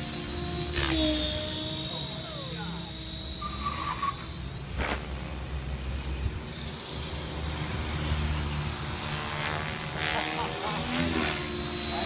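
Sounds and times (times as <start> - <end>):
remote-control helicopter whine: 0.0 - 12.0.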